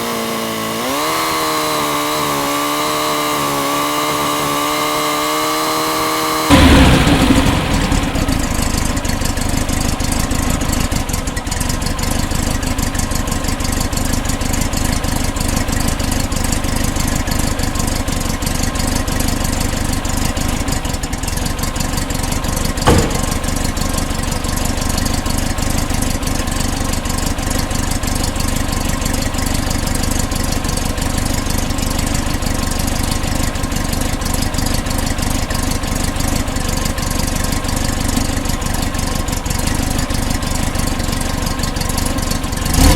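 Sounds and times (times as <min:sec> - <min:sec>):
air-cooled car engine running: 0:00.0 - 0:42.9
sharp click: 0:22.9 - 0:23.6.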